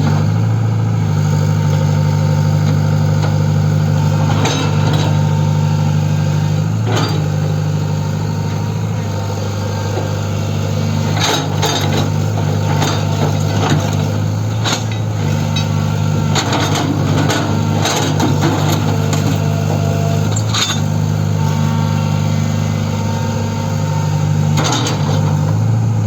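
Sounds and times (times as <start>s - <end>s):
diesel engine running: 0.0s - 26.0s
track chain clanking: 11.1s - 21.0s.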